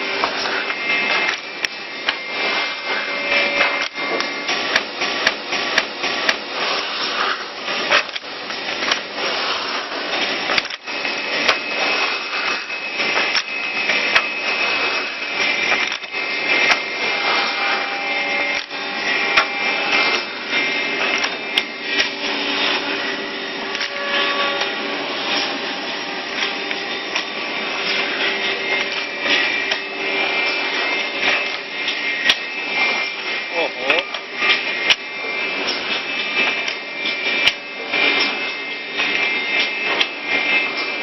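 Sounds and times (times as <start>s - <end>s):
drilling machine motor whine: 0.0s - 41.0s.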